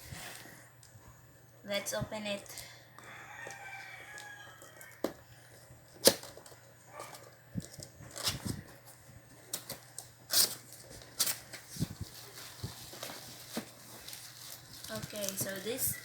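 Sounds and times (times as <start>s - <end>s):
packaging rustling: 5.6s - 16.0s.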